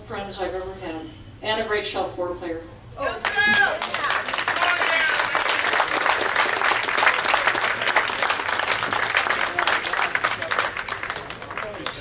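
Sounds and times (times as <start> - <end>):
audience applauding: 3.2 - 12.0.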